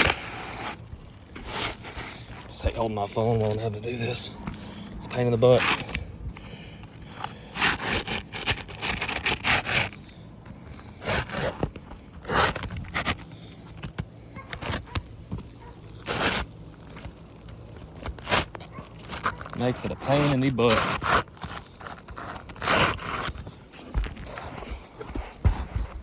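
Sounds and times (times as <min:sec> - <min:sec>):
scraping and crackling of roof shingles: 0:00.0 - 0:26.0.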